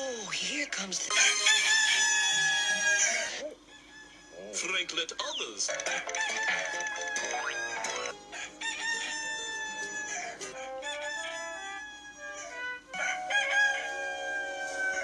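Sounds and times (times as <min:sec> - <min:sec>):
rooster crowing: 0:01.1 - 0:04.6, 0:05.7 - 0:15.0.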